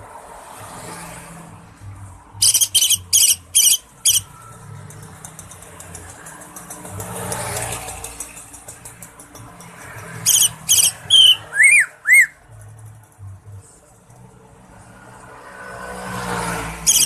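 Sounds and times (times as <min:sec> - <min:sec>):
bird calling high notes: 0:02.4 - 0:04.3, 0:10.3 - 0:12.4.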